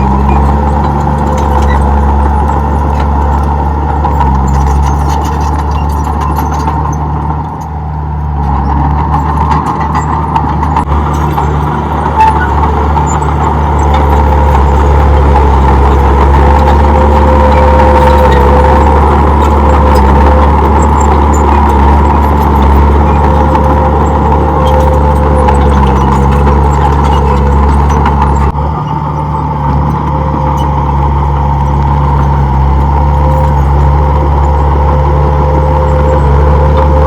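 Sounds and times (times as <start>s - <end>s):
bulldozer diesel engine running: 0.0s - 37.0s.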